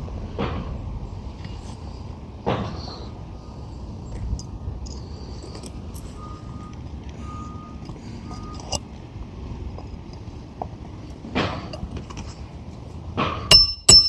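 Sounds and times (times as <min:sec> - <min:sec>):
low engine rumble: 0:00.0 - 0:14.0
truck reversing beeper: 0:01.9 - 0:09.7.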